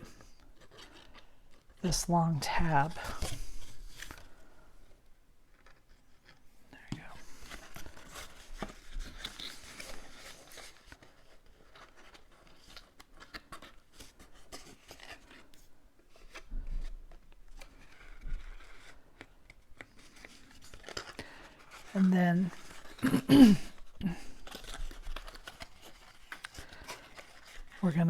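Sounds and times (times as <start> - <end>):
paper rustling and clicking: 5.5 - 6.4, 7.0 - 21.9, 23.8 - 27.8.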